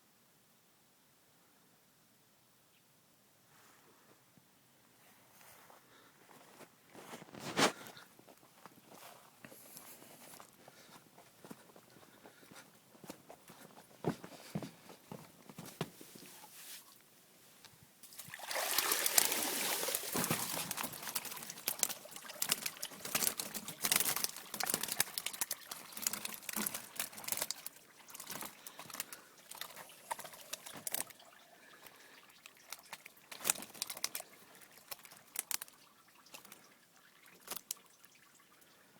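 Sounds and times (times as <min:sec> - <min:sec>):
water dripping: 0:18.0 - 0:38.9
water splashing and pattering: 0:18.0 - 0:38.9.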